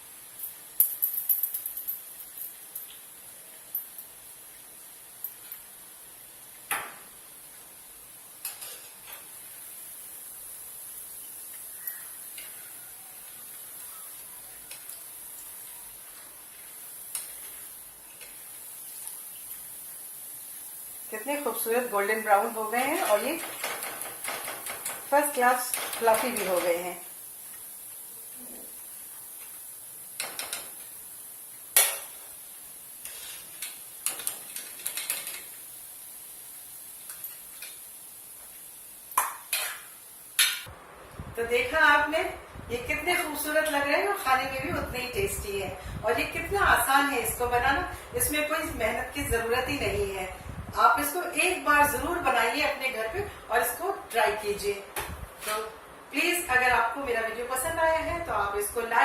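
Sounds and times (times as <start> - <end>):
dough deep-frying in hot oil: 0.0 - 59.0
metal utensils clinking on a pan: 22.8 - 26.9.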